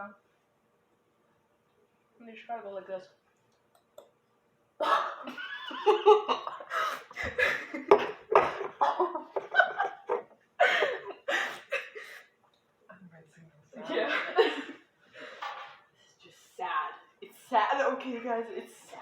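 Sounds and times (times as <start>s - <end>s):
people laughing: 4.8s - 12.2s, 13.8s - 14.9s.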